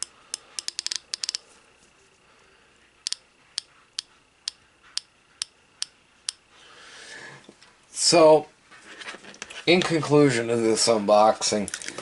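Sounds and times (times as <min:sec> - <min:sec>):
ratchet clicking: 0:00.0 - 0:01.4.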